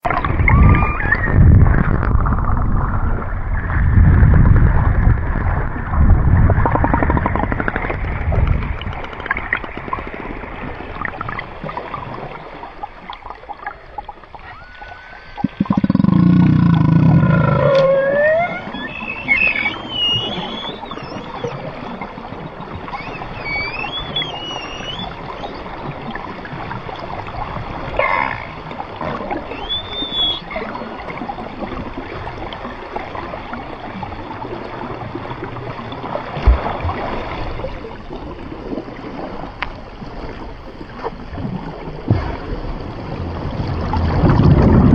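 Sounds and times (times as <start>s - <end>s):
orca whistled calls: 17.3s - 21.7s, 22.9s - 25.5s, 29.4s - 30.6s.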